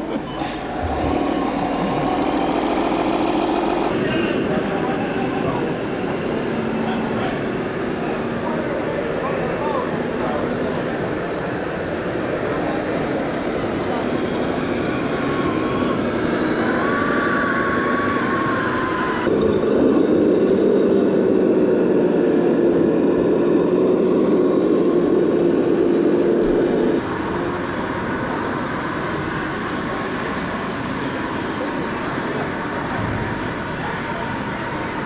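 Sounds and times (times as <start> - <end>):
noisy background: 0.0 - 35.0
small electric motors whining: 0.5 - 3.9.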